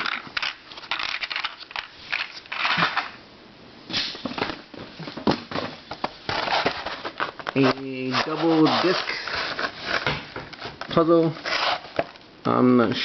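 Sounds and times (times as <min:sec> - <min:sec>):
plastic packaging crinkling: 0:06.3 - 0:12.2.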